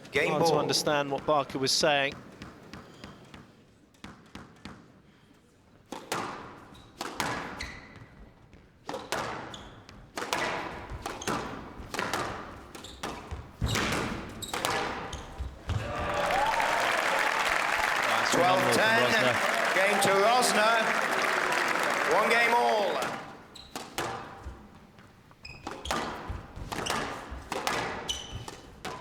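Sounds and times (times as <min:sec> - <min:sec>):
squash ball hitting rackets and walls: 0:02.2 - 0:05.0, 0:05.8 - 0:15.9, 0:23.2 - 0:29.0
spectators applauding: 0:15.7 - 0:23.5.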